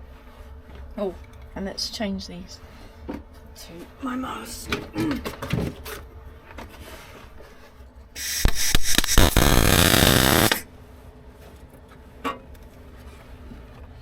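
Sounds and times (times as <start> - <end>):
electric welder crackling: 8.2 - 10.6
welder sharp clicks: 8.2 - 10.6.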